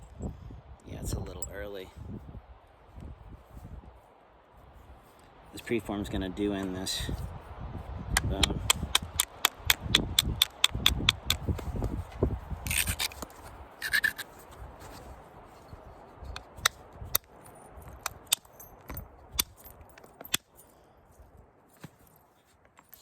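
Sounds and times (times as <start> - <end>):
bone striking stone clicks: 8.2 - 11.7, 12.7 - 14.3, 16.3 - 20.5
short scraping sounds: 11.6 - 16.4.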